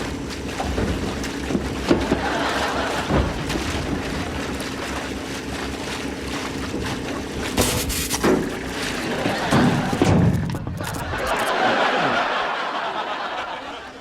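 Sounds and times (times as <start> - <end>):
heat pump drone: 0.0 - 14.0
loud burst of hiss: 7.6 - 8.2.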